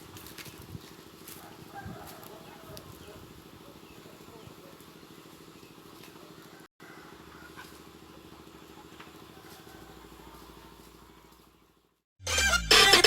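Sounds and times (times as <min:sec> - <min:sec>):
loud electronic music: 0:12.2 - 0:13.0.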